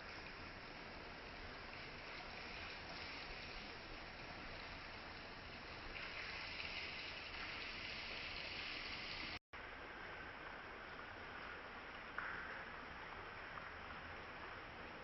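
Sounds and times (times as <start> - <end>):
stream water babbling: 0.0 - 15.0.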